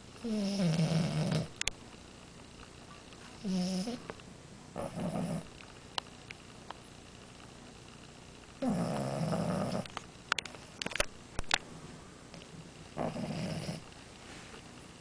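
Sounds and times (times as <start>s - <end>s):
dog snoring: 0.2s - 1.6s, 3.4s - 4.1s, 4.7s - 5.6s, 8.6s - 9.9s, 12.9s - 13.9s.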